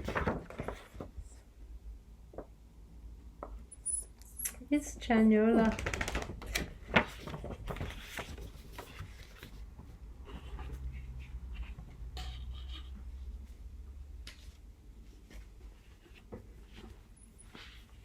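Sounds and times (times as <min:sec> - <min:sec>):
paper and cardboard rustling: 0:00.0 - 0:01.4, 0:05.6 - 0:11.9.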